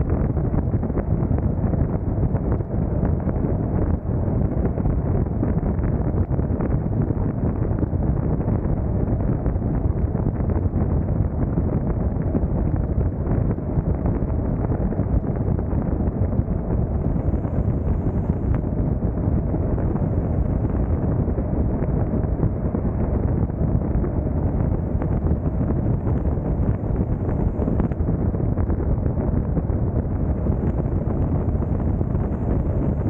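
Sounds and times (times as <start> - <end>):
wind across microphone: 0.0 - 33.0
car tyre and road rumble: 16.3 - 21.8, 22.6 - 33.0.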